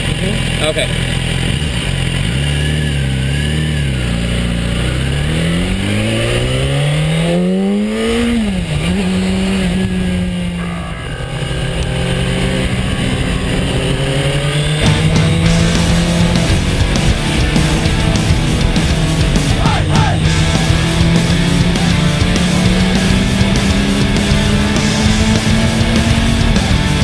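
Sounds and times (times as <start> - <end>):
motorcycle engine revving: 0.0 - 27.0.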